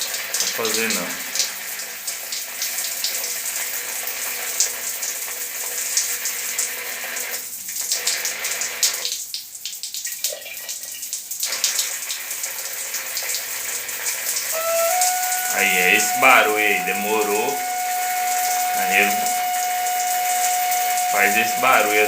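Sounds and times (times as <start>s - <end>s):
shower water spraying: 14.2s - 22.0s.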